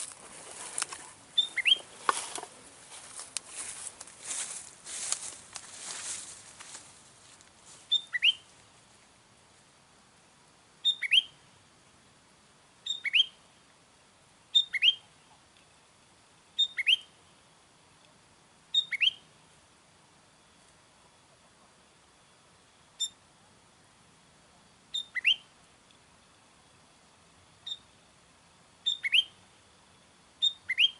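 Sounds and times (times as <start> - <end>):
bird calling with rising sweep: 1.4 - 1.9.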